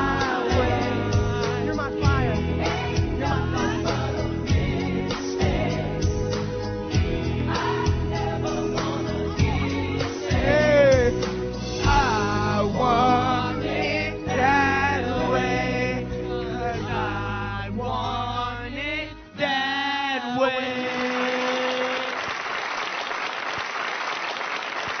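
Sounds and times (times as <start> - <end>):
backing music: 0.0 - 21.4
voices singing pop ballad: 0.0 - 22.1
applause: 20.8 - 25.0.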